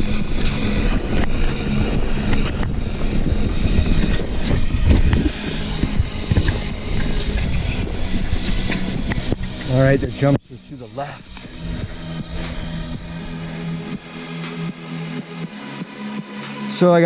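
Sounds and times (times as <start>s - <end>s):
mountain bike rolling on dirt: 0.0s - 10.3s
wind buffeting microphone: 0.0s - 15.2s.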